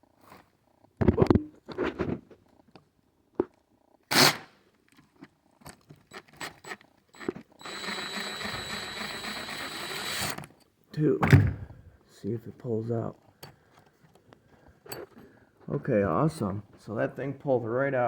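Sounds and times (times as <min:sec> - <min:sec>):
cordless power driver whining: 0:07.2 - 0:10.5.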